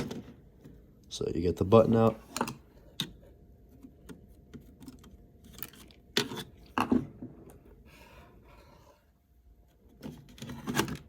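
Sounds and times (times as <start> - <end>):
plastic parts clicking and scraping: 9.9 - 11.0.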